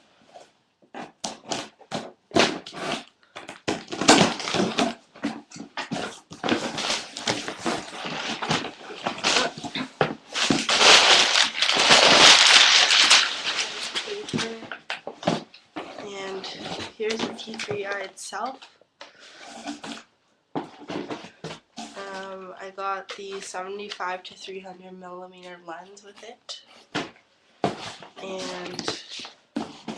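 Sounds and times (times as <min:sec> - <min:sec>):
packaging rustling and crinkling: 0:00.3 - 0:20.0, 0:26.9 - 0:29.9.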